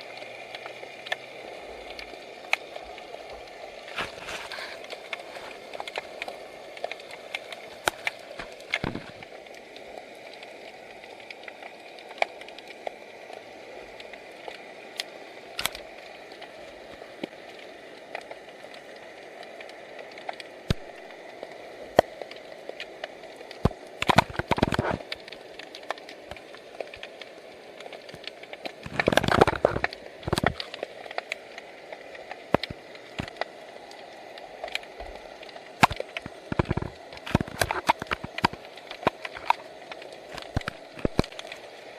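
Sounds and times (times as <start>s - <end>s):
water rushing bursts: 0.0s - 11.3s, 19.7s - 41.9s
steady hiss: 0.0s - 41.9s
underwater clicks and crackles: 0.0s - 41.9s.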